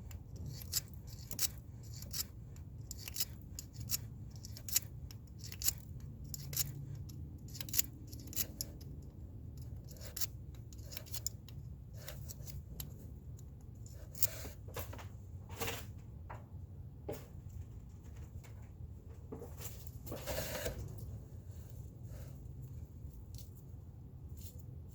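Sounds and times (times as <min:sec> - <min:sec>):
metal tool scrapes and clicks: 0:00.0 - 0:14.6.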